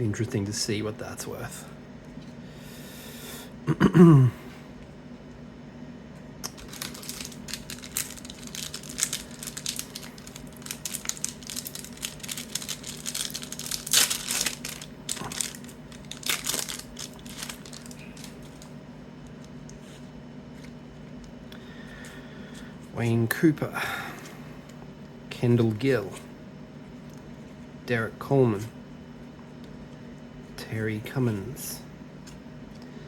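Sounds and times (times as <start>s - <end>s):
wrapper crinkling and tearing: 6.4s - 20.8s.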